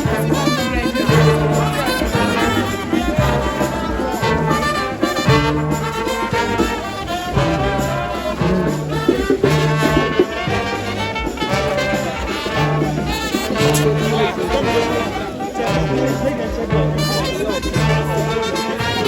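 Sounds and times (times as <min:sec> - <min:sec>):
brass band music: 0:00.0 - 0:19.0
repeating bass line: 0:00.0 - 0:19.0.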